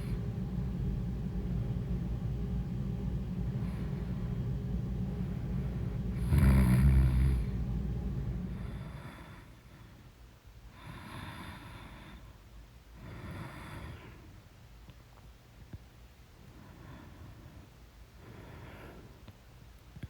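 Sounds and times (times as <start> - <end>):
person snoring: 6.2 - 7.6.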